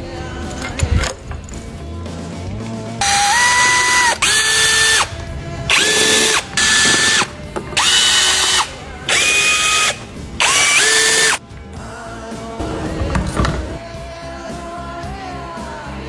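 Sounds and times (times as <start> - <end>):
electric power driver whining: 3.0 - 11.8, 12.6 - 13.9.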